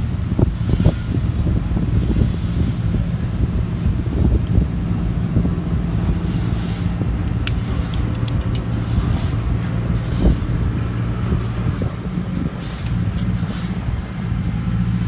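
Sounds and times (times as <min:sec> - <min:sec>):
light sharp clicks: 0:07.3 - 0:08.7.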